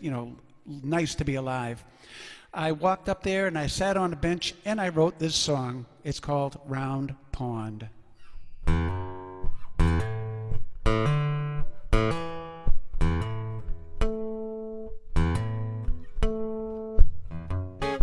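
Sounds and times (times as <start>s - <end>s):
guitar chords ringing: 8.3s - 18.0s.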